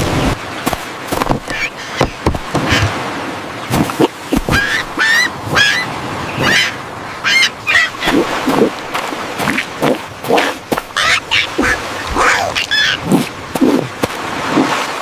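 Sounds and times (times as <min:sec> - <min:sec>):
bird short calls: 0:04.4 - 0:08.2, 0:10.3 - 0:13.1.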